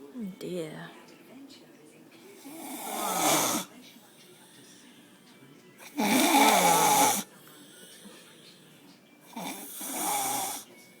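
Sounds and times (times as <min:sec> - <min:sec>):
person snoring: 0:02.4 - 0:03.7, 0:05.8 - 0:07.3, 0:09.3 - 0:10.7.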